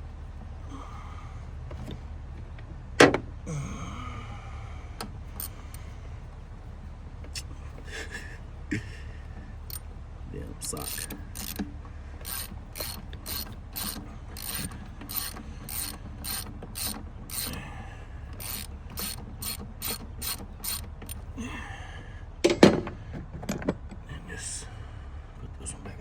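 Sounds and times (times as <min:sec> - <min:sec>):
ratchet wrench clicking: 0:05.4 - 0:05.6, 0:10.7 - 0:11.6, 0:12.2 - 0:17.6, 0:18.4 - 0:21.2.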